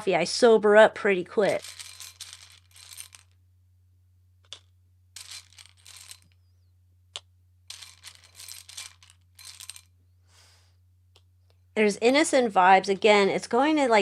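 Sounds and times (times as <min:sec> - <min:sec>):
low steady hum: 0:00.0 - 0:14.0
cards rustling: 0:01.4 - 0:03.4, 0:04.4 - 0:06.4, 0:07.7 - 0:09.9.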